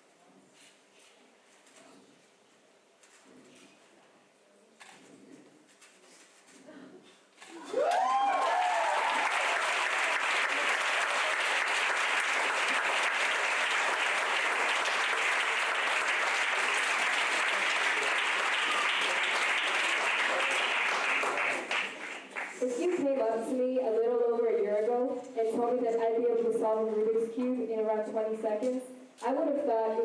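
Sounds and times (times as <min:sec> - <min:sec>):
whoops and cheers: 0:07.6 - 0:11.4
audience applause: 0:07.6 - 0:22.7.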